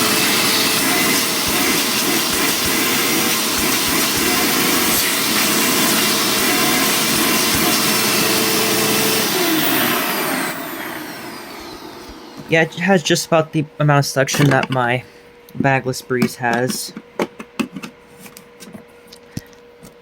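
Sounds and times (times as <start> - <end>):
vacuum cleaner motor whine: 0.0 - 13.5.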